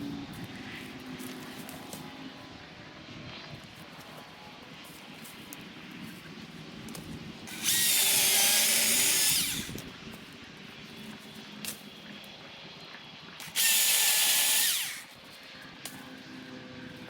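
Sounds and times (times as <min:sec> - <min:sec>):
battery chainsaw cutting wood: 0:07.5 - 0:09.8, 0:13.4 - 0:15.2.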